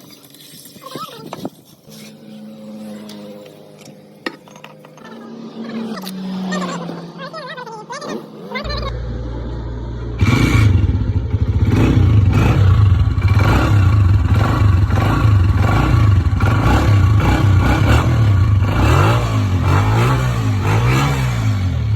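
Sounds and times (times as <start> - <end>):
motorcycle engine revving: 8.2 - 21.9.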